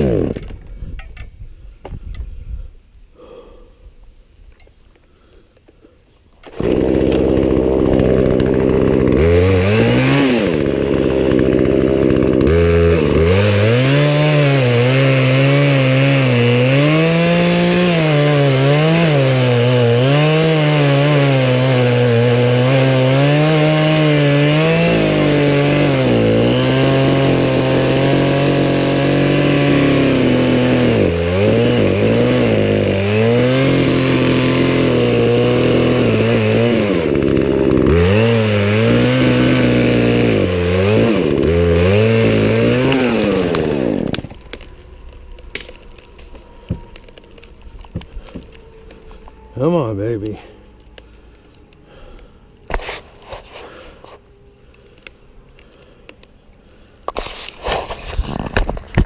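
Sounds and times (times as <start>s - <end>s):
chainsaw running: 0.0s - 0.6s, 6.4s - 52.2s.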